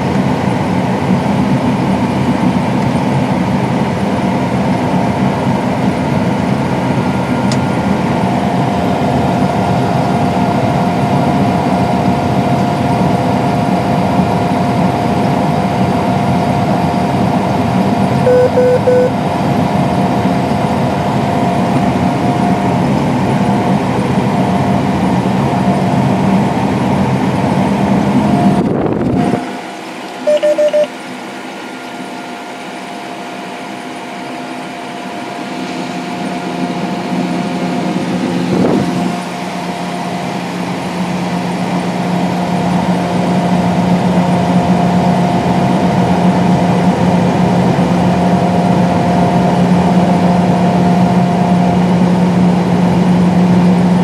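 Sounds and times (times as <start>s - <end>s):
combine harvester drone with whine: 0.0s - 54.0s
quiet machine hum: 6.1s - 52.1s
short electronic beeps: 18.3s - 19.1s, 30.2s - 31.0s.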